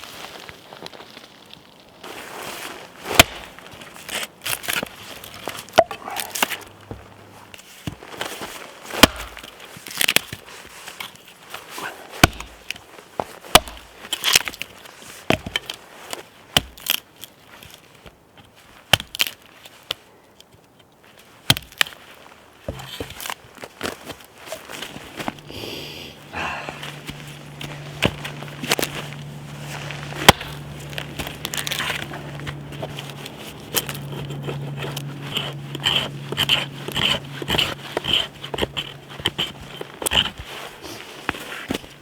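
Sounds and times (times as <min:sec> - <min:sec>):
axe chopping wood: 0:03.1 - 0:03.6, 0:04.6 - 0:07.1, 0:08.9 - 0:10.4, 0:11.8 - 0:12.7, 0:13.5 - 0:14.6, 0:16.6 - 0:17.0, 0:21.5 - 0:21.9, 0:22.7 - 0:23.3, 0:26.4 - 0:40.4.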